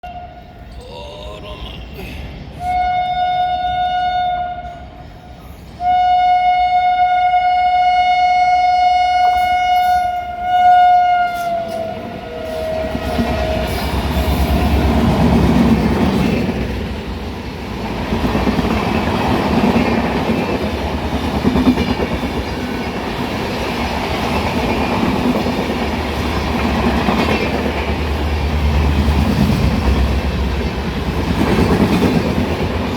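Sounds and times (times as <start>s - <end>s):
train horn blasts: 2.6s - 5.0s, 5.8s - 13.6s
train coaches rumbling and clacking: 9.2s - 32.9s.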